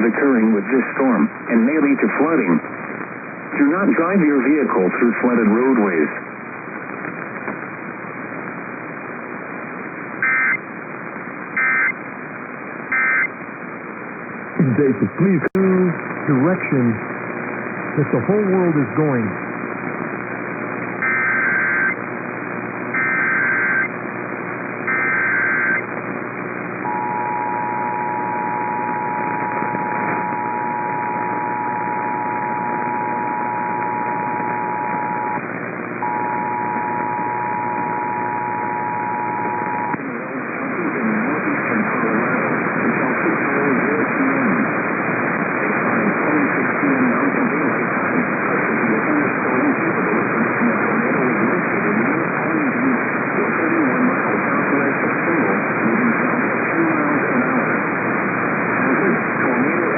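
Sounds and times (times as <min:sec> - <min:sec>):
radio static hiss: 0:00.0 - 0:59.9
two-tone attention signal: 0:24.9 - 0:25.8, 0:26.9 - 0:35.4, 0:36.0 - 0:40.0.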